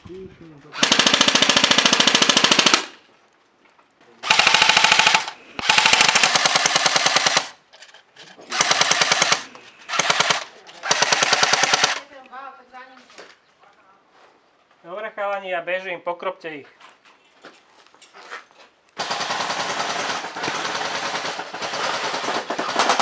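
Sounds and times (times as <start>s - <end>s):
airsoft gun automatic fire: 0.8s - 3.0s, 4.2s - 7.6s, 8.5s - 12.0s, 19.0s - 23.0s.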